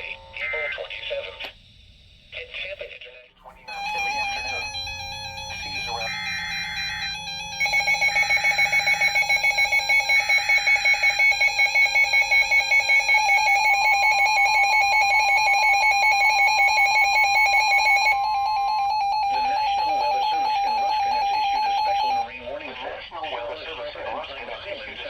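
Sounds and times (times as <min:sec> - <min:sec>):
long steady warning alarm tone: 0:00.0 - 0:02.5, 0:03.6 - 0:22.4
electronic alarm beeping rapidly: 0:03.7 - 0:22.3.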